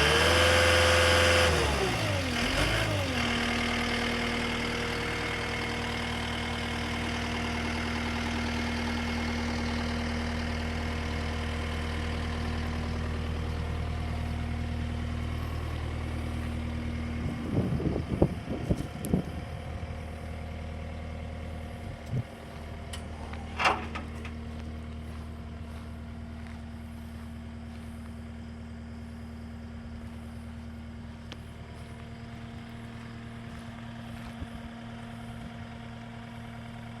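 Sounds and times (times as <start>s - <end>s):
diesel engine idling: 0.0s - 37.0s
engine clatter: 0.0s - 37.0s.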